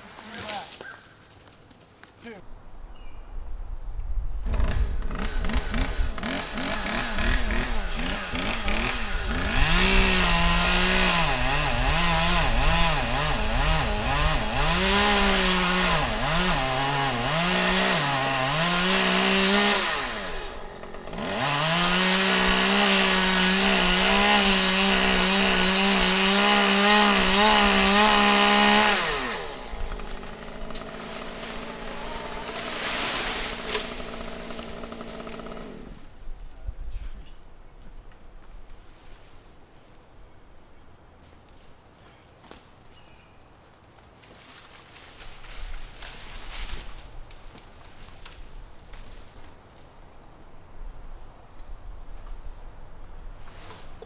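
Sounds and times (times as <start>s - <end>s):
chainsaw revving and cutting wood: 4.5s - 36.1s.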